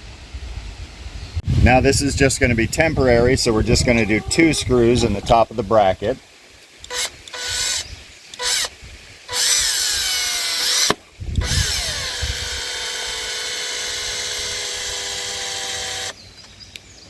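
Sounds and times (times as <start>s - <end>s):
power drill driving screws into wood: 6.9s - 16.2s.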